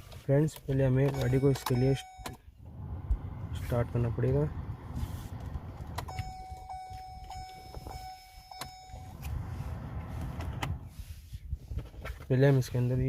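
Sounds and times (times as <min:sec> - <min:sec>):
car engine running: 0:01.2 - 0:11.0
steady high tone: 0:05.8 - 0:09.9.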